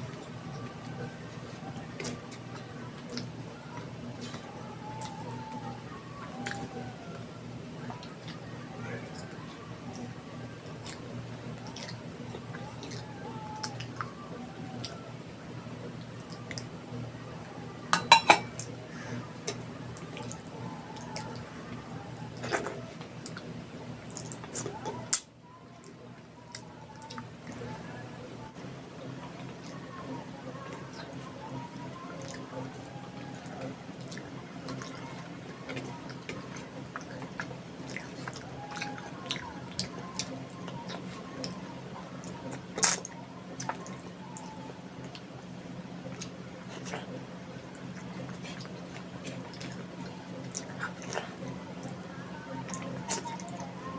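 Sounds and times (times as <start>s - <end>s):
person chewing food: 10.6s - 14.1s, 32.2s - 41.6s, 46.1s - 53.7s
tableware clinking: 18.0s - 18.6s.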